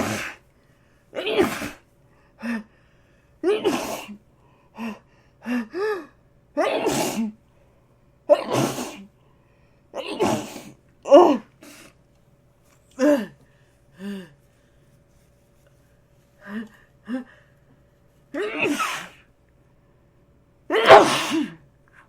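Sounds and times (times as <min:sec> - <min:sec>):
person sneezing: 0:00.0 - 0:00.5, 0:01.1 - 0:02.7, 0:03.4 - 0:04.2, 0:04.8 - 0:07.4, 0:08.3 - 0:09.1, 0:10.0 - 0:12.0, 0:18.4 - 0:19.3, 0:20.7 - 0:21.7.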